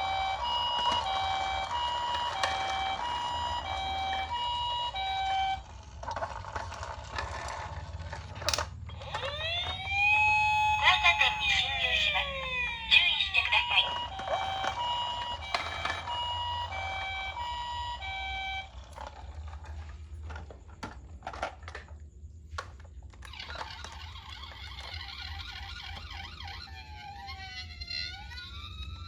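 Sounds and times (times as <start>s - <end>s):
sweeping siren: 0.0s - 5.7s, 8.9s - 18.8s
two-tone toy siren: 0.0s - 7.6s, 8.5s - 19.9s, 23.2s - 29.0s.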